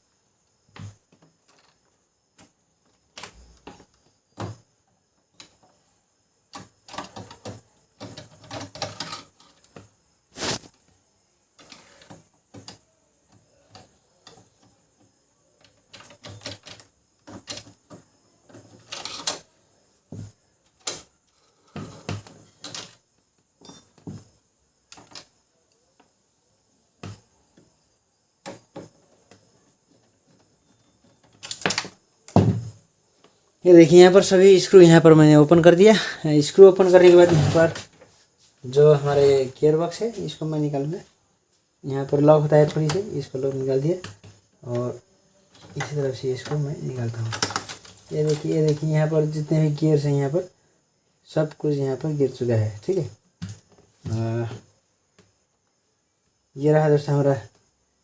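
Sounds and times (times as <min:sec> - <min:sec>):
small parts set down: 0:06.6 - 0:10.7, 0:23.6 - 0:25.4, 0:31.1 - 0:32.8, 0:47.2 - 0:48.6.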